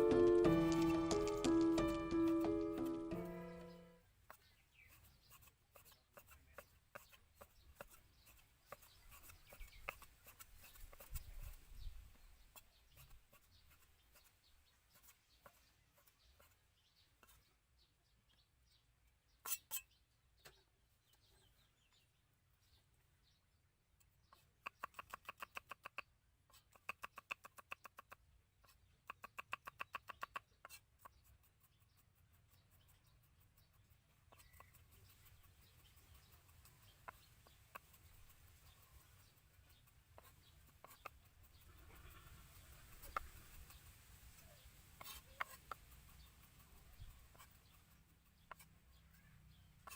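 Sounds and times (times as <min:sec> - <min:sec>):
chicken clucking: 0:34.3 - 0:49.2.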